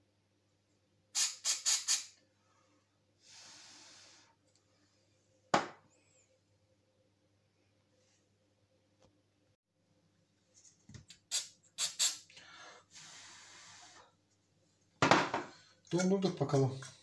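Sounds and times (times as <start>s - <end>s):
short hiss: 1.2s - 2.2s, 11.2s - 12.3s.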